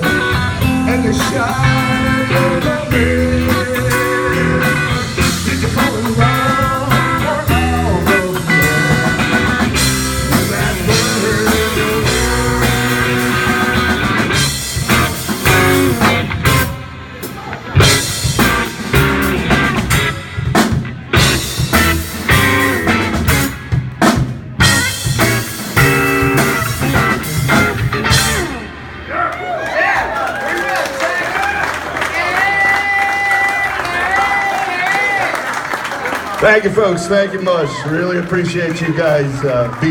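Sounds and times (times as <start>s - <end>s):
blues-rock band playing: 0.0s - 29.1s.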